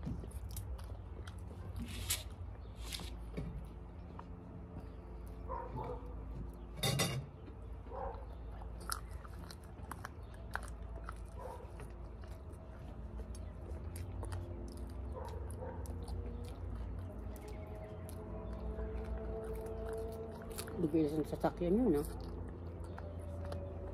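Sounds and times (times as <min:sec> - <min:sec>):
steady low rumble: 0:00.0 - 0:23.9
person chewing: 0:08.5 - 0:20.8.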